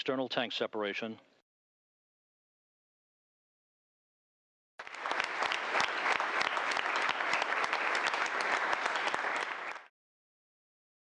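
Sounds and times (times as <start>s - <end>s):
group applauding: 4.8s - 9.9s.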